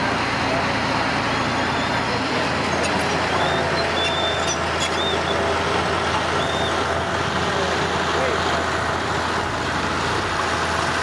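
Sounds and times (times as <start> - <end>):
diesel engine running: 0.0 - 11.0
high squeaks: 2.6 - 5.5.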